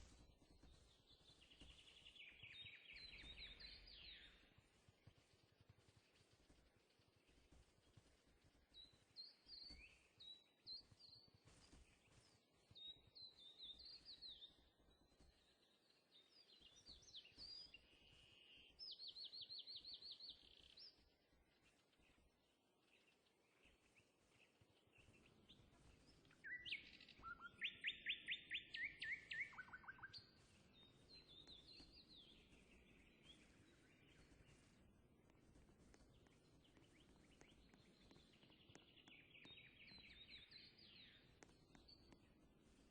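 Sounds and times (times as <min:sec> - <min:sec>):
birds chirping and trilling: 0:00.3 - 0:04.5, 0:23.0 - 0:34.8.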